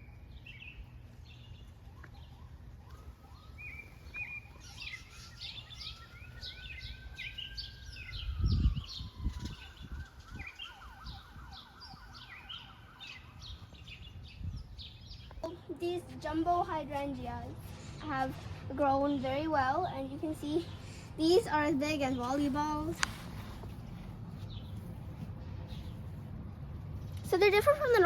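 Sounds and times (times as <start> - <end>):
birds chirping and singing: 0.0 - 18.1, 18.8 - 26.2
faint siren wailing: 0.0 - 20.8.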